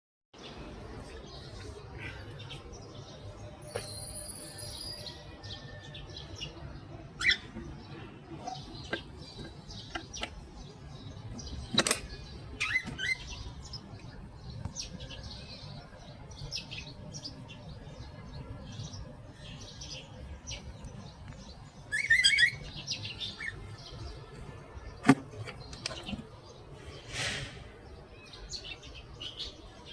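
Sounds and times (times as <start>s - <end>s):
cockatiel chirping: 7.2s - 7.5s.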